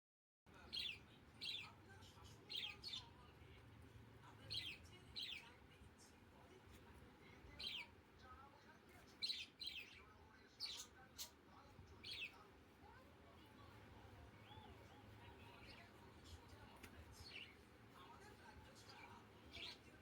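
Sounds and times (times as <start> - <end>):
low background hum: 0.5 - 20.0
faint bird chirps: 9.1 - 13.0, 13.6 - 20.0.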